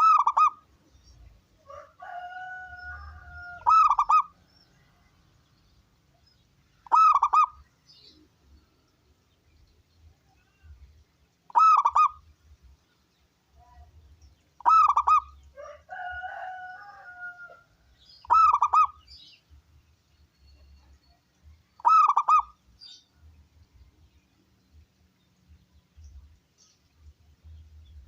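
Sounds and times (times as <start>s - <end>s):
dove cooing: 0.0s - 0.6s, 2.1s - 4.4s, 6.8s - 7.6s, 11.5s - 12.2s, 14.6s - 15.4s, 18.2s - 19.0s, 21.8s - 22.6s.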